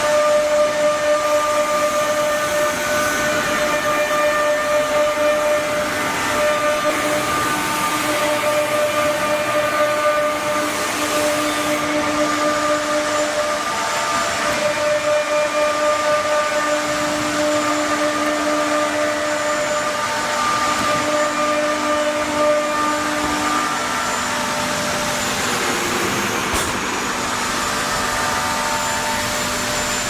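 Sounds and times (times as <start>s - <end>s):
router cutting wood: 0.0s - 30.0s
router spindle whining: 0.0s - 30.0s.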